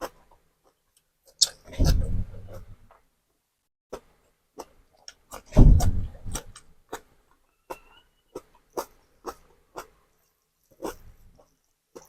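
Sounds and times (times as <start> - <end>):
low thud: 5.5 - 6.4.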